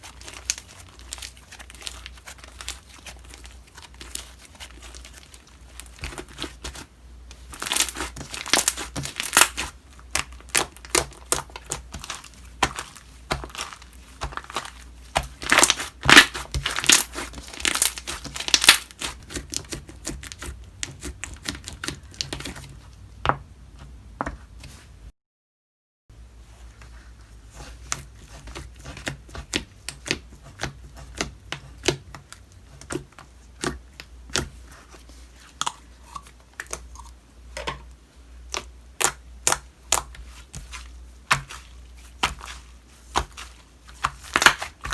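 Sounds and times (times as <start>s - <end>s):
slime squished by hand: 7.5s - 22.7s, 38.5s - 44.9s.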